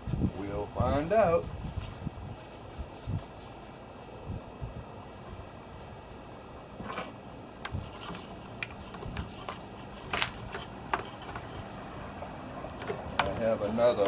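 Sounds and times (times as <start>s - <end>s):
hand tools clicking and tapping: 7.6s - 11.7s, 12.7s - 14.0s.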